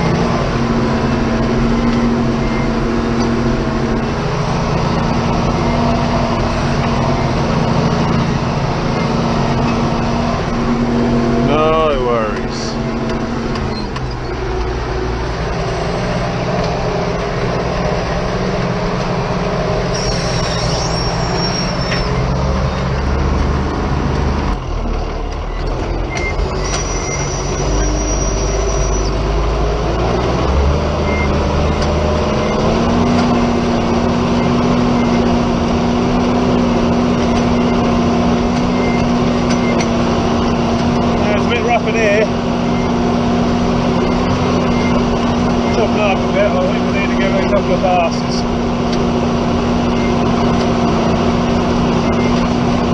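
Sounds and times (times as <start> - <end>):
tractor diesel engine running: 0.0 - 52.9
brief high whines: 19.9 - 22.2.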